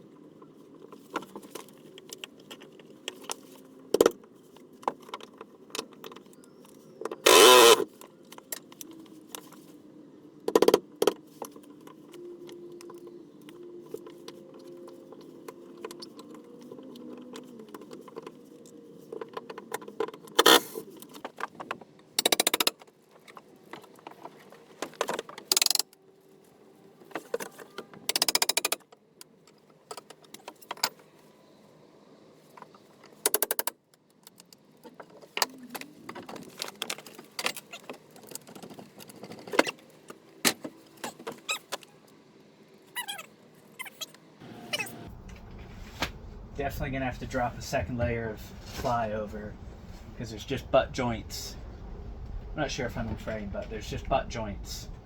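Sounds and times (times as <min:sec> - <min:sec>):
low steady hum: 0:44.4 - 0:55.0.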